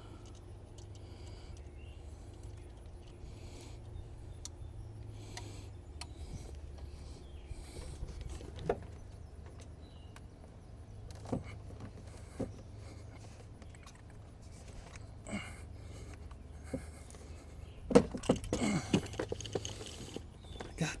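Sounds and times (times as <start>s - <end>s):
low steady hum: 0.0s - 21.0s.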